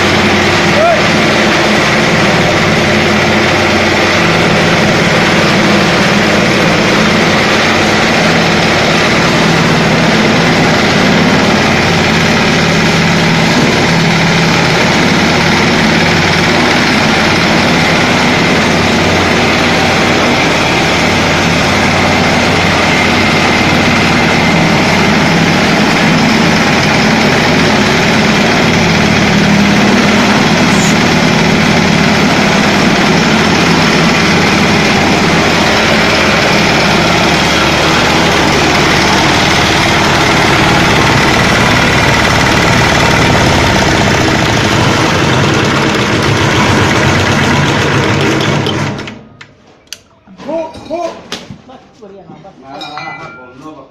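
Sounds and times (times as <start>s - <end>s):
concrete cutting machine engine running: 0.0s - 49.4s.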